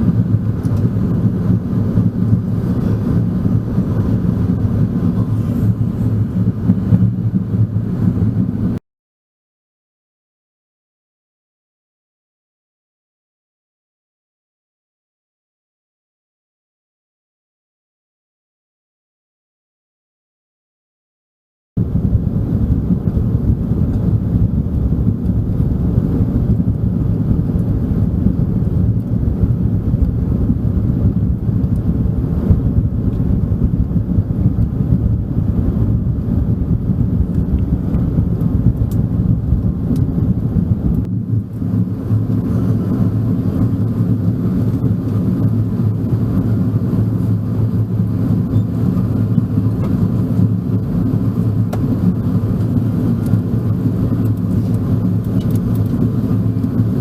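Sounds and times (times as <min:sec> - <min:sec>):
airliner cabin engine rumble: 0:00.0 - 0:08.8, 0:21.8 - 0:57.0.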